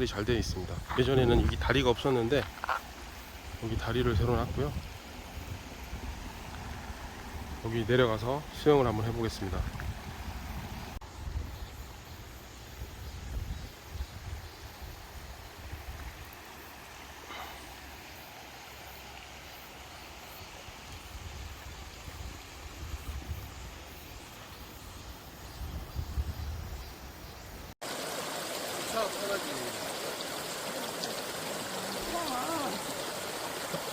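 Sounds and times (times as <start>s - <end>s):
stream rushing over rocks: 0.0s - 11.0s, 27.8s - 33.9s.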